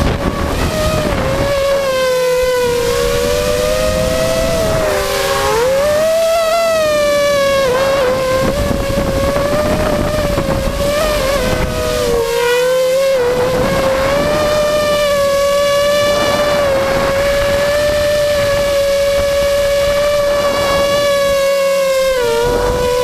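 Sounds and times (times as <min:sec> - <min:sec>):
engine droning at high revs: 0:00.0 - 0:23.0.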